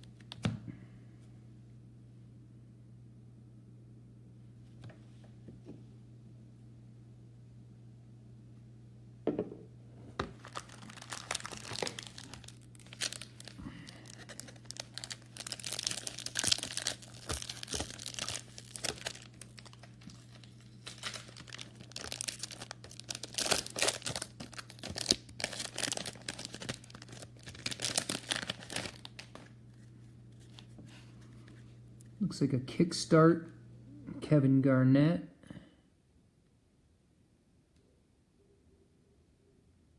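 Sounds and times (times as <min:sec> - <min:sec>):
faint low hum: 0:00.0 - 0:39.9
wrapper tearing and crinkling: 0:10.3 - 0:29.5
cards rustling: 0:10.3 - 0:31.7.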